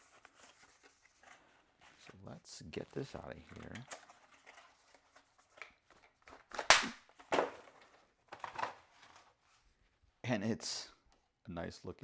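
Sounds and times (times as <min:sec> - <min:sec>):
packaging scraping and crackling: 0:00.0 - 0:06.5.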